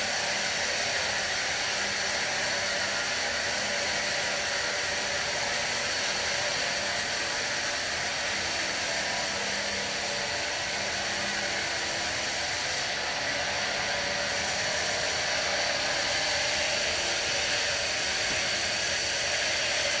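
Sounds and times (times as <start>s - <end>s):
bandsaw running: 0.0s - 20.0s.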